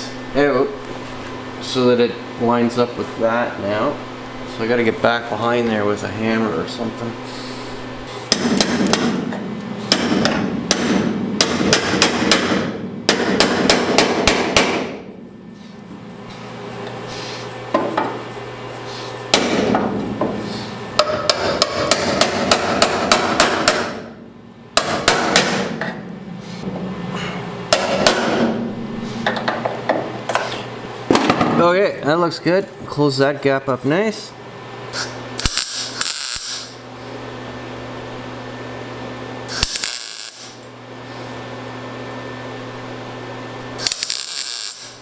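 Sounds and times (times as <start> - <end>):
hammer striking sheet steel: 8.3 - 15.2, 19.3 - 20.4, 21.0 - 24.2, 24.8 - 26.0, 27.7 - 28.6.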